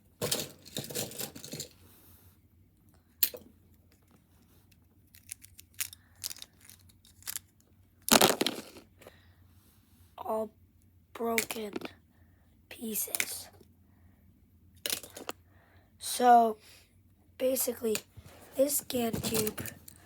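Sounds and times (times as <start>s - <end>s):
plastic pieces rustling: 0.2s - 1.8s, 5.1s - 7.5s, 8.1s - 8.9s, 18.6s - 20.0s
plastic pieces clicking: 4.7s - 8.8s, 14.8s - 15.4s.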